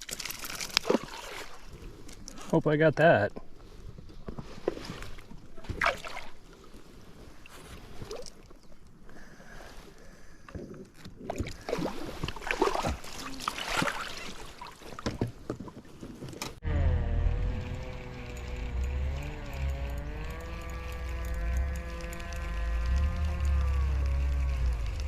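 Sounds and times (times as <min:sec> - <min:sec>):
water splashing and lapping: 0:00.0 - 0:02.4, 0:03.5 - 0:16.4, 0:17.4 - 0:25.0.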